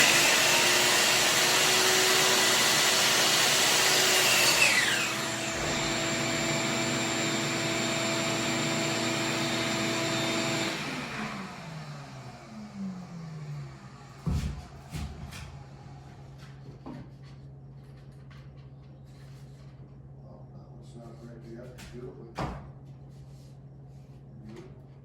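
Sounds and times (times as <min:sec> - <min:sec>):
power tool whining: 0:00.0 - 0:14.3.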